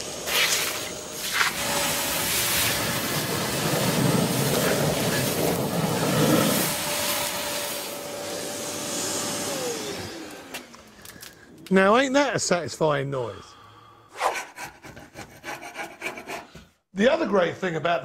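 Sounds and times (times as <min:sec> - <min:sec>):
vacuum gurgling sucking sludge: 0:00.0 - 0:10.1
vacuum motor whine: 0:00.0 - 0:11.4.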